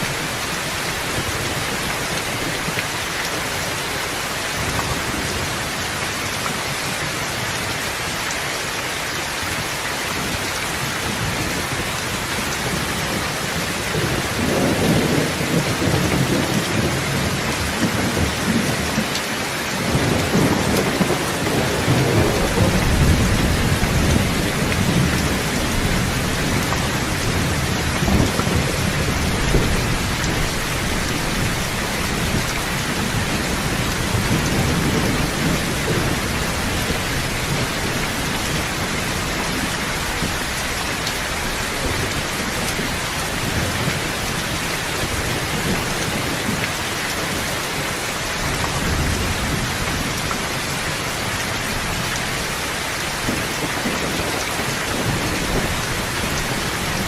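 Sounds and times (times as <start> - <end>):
heavy rain: 0.0 - 57.0
thunder rumbling: 11.0 - 46.6, 48.3 - 57.0.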